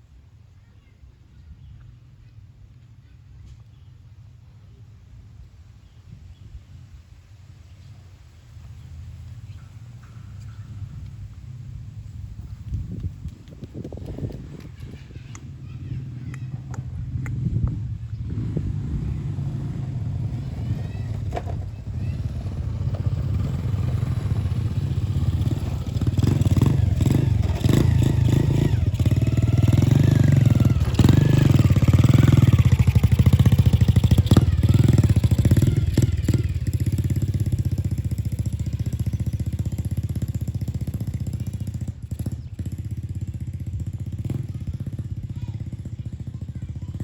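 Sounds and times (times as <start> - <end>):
small engine running: 9.8 - 47.0.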